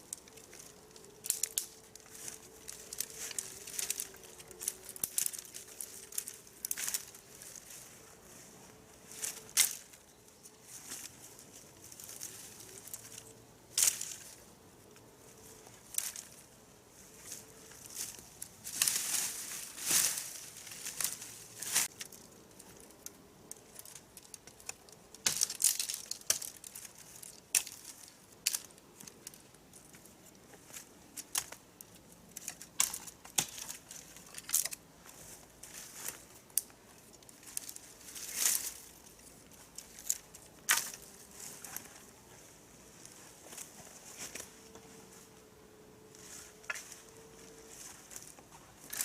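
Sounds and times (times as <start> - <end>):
sharp crackles: 0.0 - 7.8
dry leaf litter crunching: 0.0 - 14.4, 15.4 - 29.4, 32.3 - 42.1.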